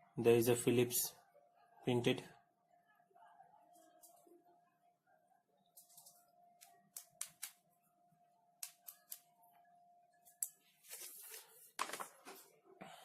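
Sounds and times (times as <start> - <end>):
sharp clicks and taps: 6.6 - 7.6
packaging rustling: 10.8 - 12.5.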